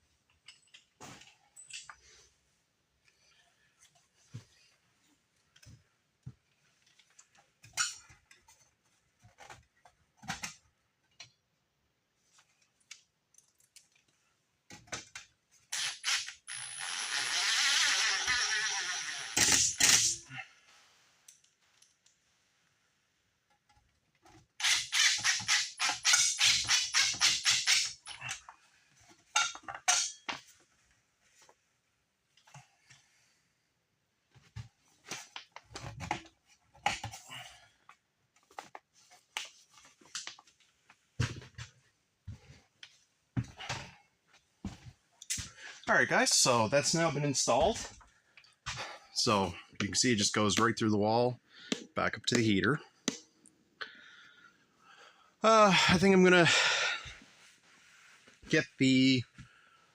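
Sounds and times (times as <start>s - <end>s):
tools clicking and knocking: 29.3s - 30.4s.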